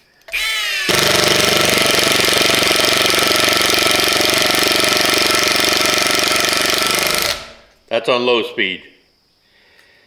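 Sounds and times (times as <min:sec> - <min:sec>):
impact driver hammering: 0:00.3 - 0:07.6
impact driver motor whine: 0:00.3 - 0:07.6.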